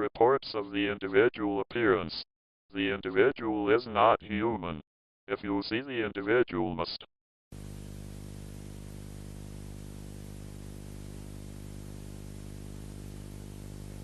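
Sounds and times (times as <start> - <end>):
low electrical buzzing hum: 7.6 - 14.0
static hiss: 7.6 - 14.0.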